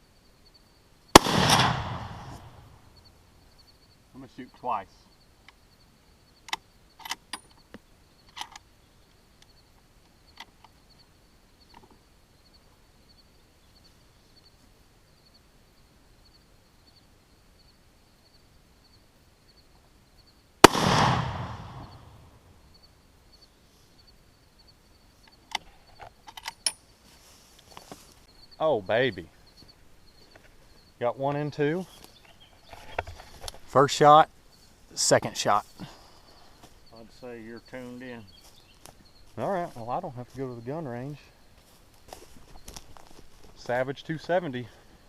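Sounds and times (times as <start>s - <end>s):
rifle shot with echo: 1.1s - 2.8s, 20.6s - 22.4s.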